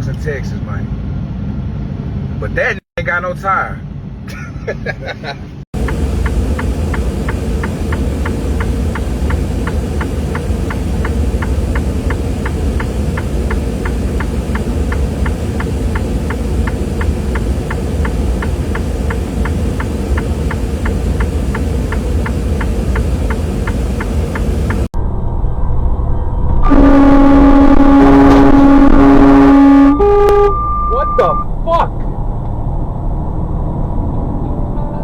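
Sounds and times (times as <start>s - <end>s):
vehicle engine and road rumble: 0.0s - 35.0s
light even ticking: 5.8s - 24.9s.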